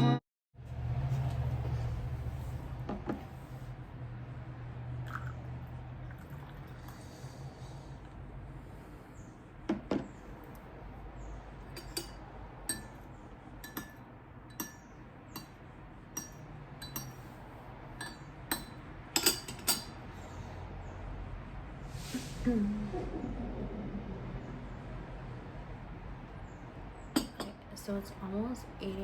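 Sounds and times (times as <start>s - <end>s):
dishes and glassware clinking: 11.7s - 13.0s, 13.6s - 15.6s, 16.2s - 17.4s, 18.0s - 20.0s, 27.2s - 27.6s.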